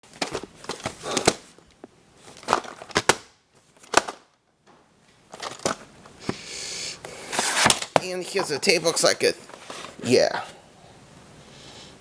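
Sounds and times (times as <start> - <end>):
crackly handling noise: 0.0 - 6.2.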